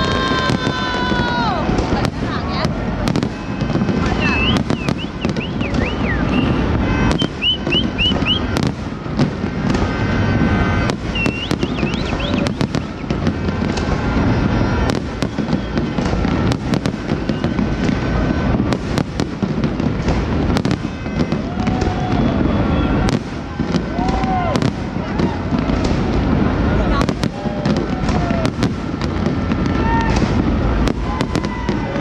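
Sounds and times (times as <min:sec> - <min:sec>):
fireworks rumble and bangs: 0:00.0 - 0:32.0
high wavering firework whistles: 0:03.0 - 0:09.0, 0:09.8 - 0:20.0.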